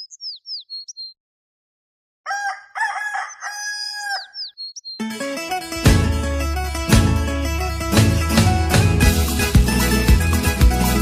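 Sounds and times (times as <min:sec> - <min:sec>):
small bird chirping: 0:00.0 - 0:01.2, 0:03.2 - 0:05.1
rooster crowing: 0:02.2 - 0:04.5
ten-string guitar playing: 0:05.0 - 0:11.0.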